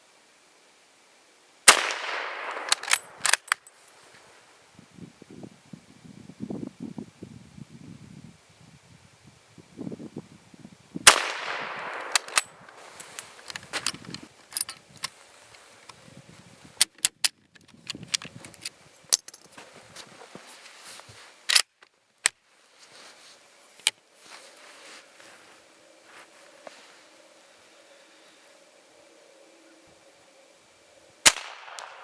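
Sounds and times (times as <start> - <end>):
rifle shot: 1.7 - 3.4, 11.0 - 12.6, 31.2 - 32.0
rifle bolt action clicks: 2.6 - 3.6.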